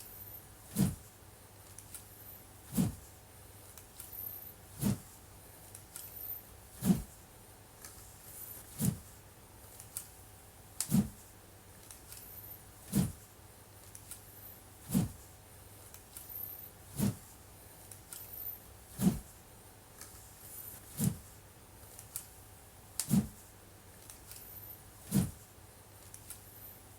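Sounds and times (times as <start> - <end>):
wooden sword swishing through air: 0.7 - 1.0, 2.7 - 3.0, 4.7 - 5.1, 6.7 - 7.1, 8.6 - 9.1, 10.9 - 11.2, 12.9 - 13.2, 14.8 - 15.2, 16.9 - 17.3, 18.9 - 19.3, 20.8 - 21.2, 23.0 - 23.4, 25.0 - 25.4.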